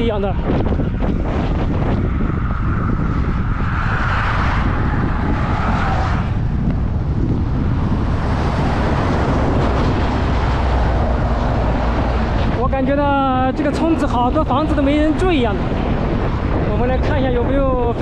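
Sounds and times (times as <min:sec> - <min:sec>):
road traffic passing: 0:00.0 - 0:18.0
wind rumble on microphone: 0:00.0 - 0:18.0.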